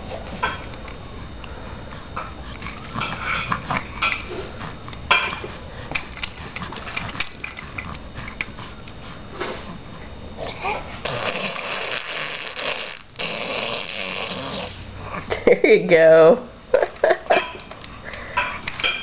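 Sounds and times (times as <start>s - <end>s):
baby blowing raspberries: 10.4s - 14.8s.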